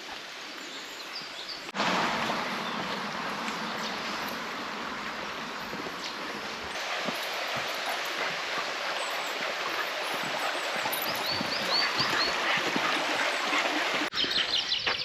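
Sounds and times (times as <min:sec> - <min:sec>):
rushing stream water: 0:00.0 - 0:15.0
small birds chirping: 0:09.0 - 0:15.0.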